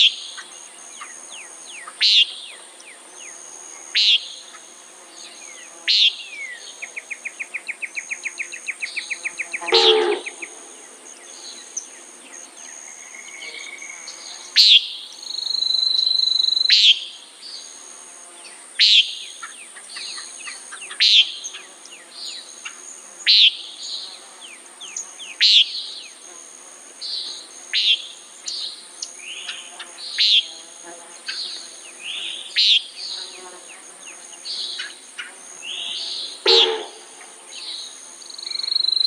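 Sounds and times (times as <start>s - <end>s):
high insect buzz: 0.0s - 39.0s
nighthawk calling: 9.4s - 10.8s, 36.4s - 37.3s.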